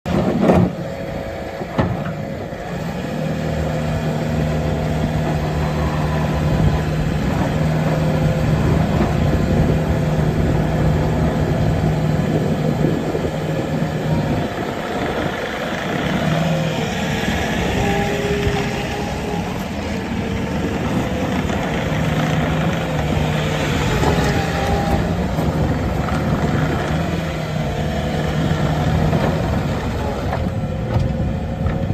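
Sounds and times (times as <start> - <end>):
diesel engine running: 0.0 - 31.9.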